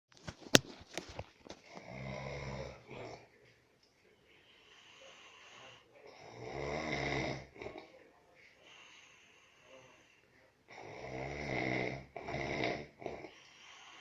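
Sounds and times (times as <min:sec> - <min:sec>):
quiet breathing: 0:01.0 - 0:14.0
man snoring: 0:01.7 - 0:03.2, 0:05.0 - 0:07.9, 0:10.7 - 0:14.0.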